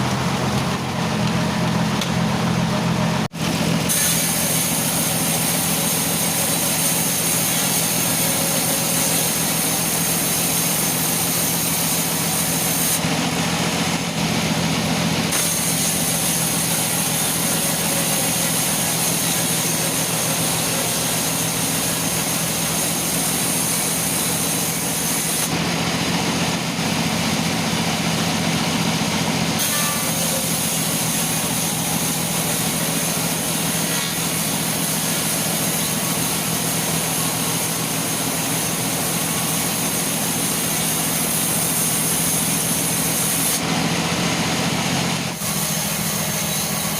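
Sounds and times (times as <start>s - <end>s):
sawmill saw humming: 0.0s - 46.9s.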